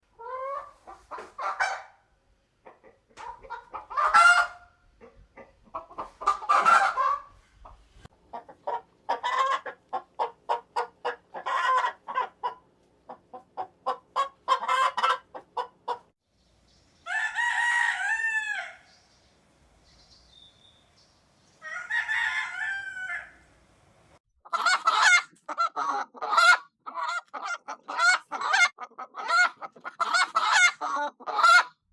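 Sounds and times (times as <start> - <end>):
chicken squawks: 0.2 - 2.0, 2.7 - 12.6, 13.3 - 16.0, 17.0 - 19.1, 19.8 - 23.6, 24.5 - 31.7
chickens clucking: 0.2 - 31.7
rooster crowing: 17.0 - 19.2, 21.4 - 23.7.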